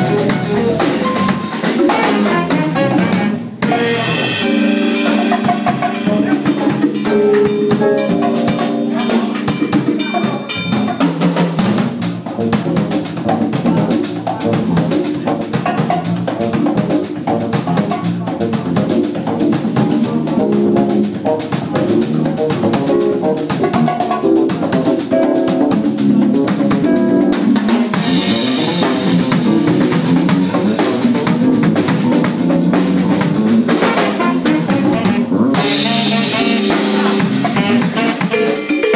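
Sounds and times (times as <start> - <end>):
drum kit strokes: 0.0 - 38.9
jazz combo playing: 0.0 - 38.9.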